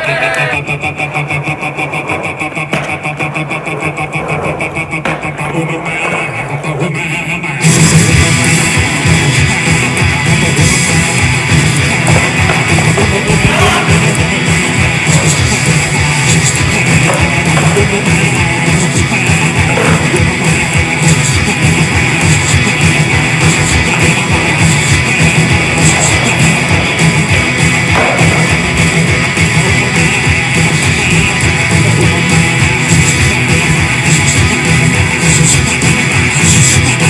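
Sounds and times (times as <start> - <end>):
electric guitar: 7.5 - 37.0
driving drum kit: 7.6 - 37.0.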